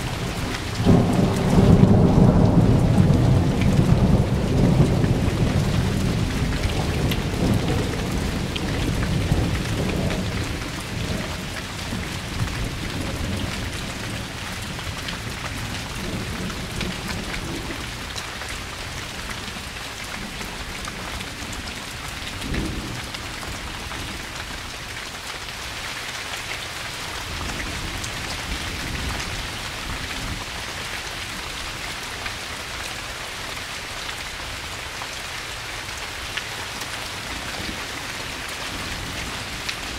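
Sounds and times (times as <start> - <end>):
thunder rumbling: 0.0 - 14.4
rain falling: 0.0 - 39.9.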